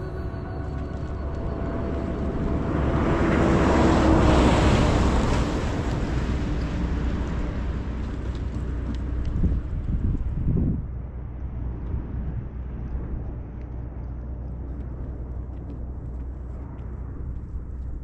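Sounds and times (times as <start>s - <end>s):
vehicle driving past: 0.0s - 9.7s.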